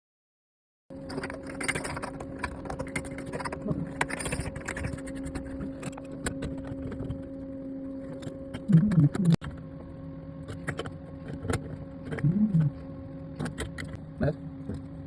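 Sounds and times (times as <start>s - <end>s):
steady hum: 0.9s - 15.0s.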